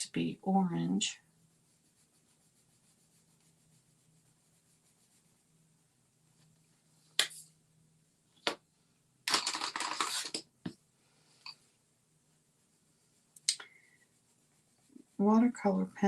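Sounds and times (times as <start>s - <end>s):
pencils clicking on desk: 9.3s - 10.5s
pencils rattling together: 9.3s - 10.5s.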